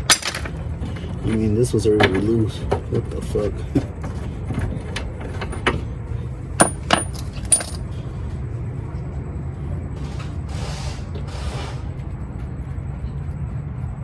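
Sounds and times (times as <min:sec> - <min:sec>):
metallic clinks of hand tools: 0:06.6 - 0:07.9.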